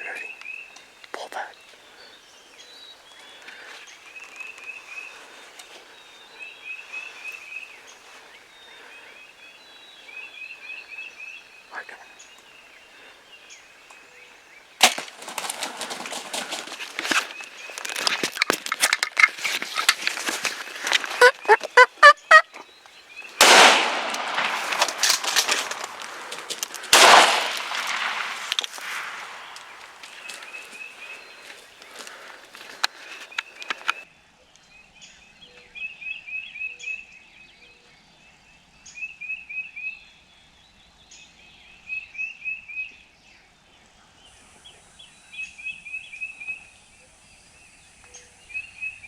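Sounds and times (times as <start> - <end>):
turkeys yelping: 18.0 - 22.6
turkeys gobbling: 20.0 - 22.6.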